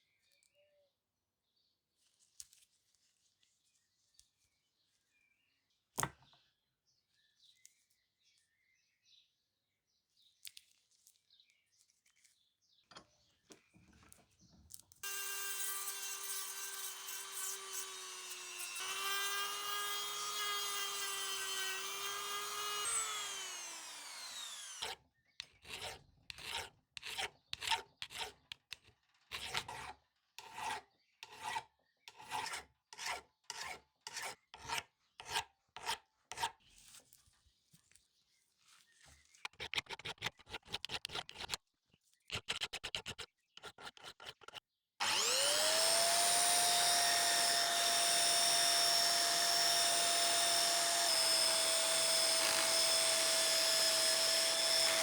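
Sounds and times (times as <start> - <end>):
small electric power tool running: 15.0 - 25.0, 44.0 - 55.0
back-and-forth strokes on wood: 15.0 - 37.0, 39.4 - 41.6, 42.3 - 55.0.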